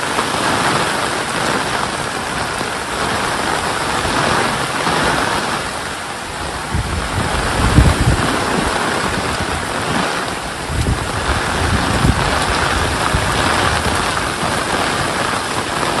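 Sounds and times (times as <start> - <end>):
rain hissing: 0.0 - 16.0
low rumbling surges: 3.2 - 14.6.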